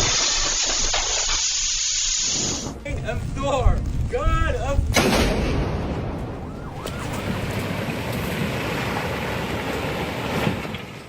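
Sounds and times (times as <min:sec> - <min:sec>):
landslide rumble: 0:02.5 - 0:10.9.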